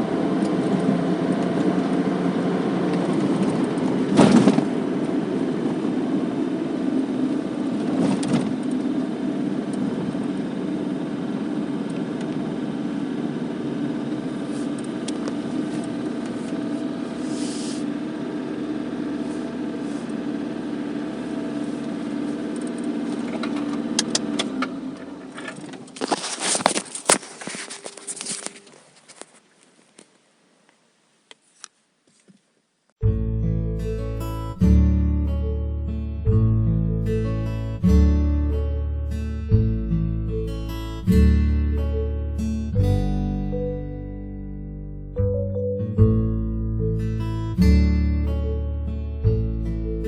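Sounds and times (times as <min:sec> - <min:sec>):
car engine running: 0:00.0 - 0:25.9.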